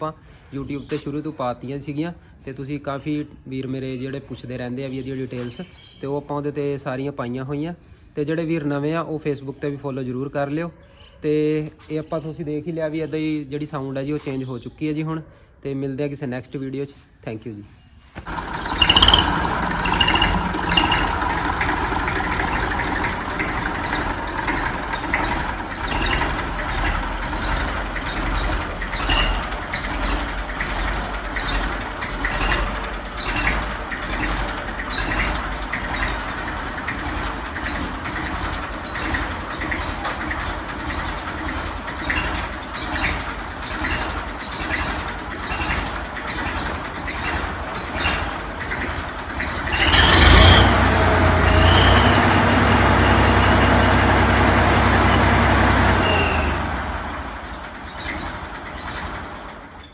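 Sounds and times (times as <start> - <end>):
tractor diesel engine running: 18.1 - 59.9.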